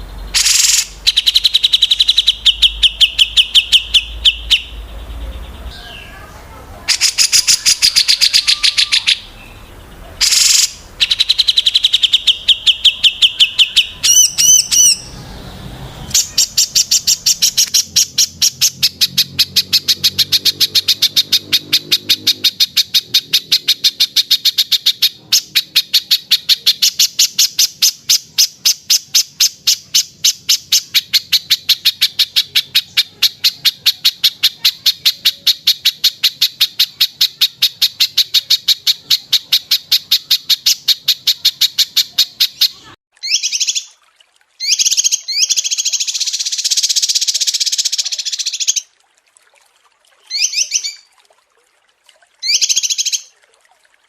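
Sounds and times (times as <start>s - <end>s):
whistled bird notes: 0.0s - 6.3s, 6.9s - 25.1s, 36.8s - 43.9s, 50.3s - 51.1s
songbird trills: 0.0s - 44.0s, 44.6s - 48.9s, 50.3s - 51.1s.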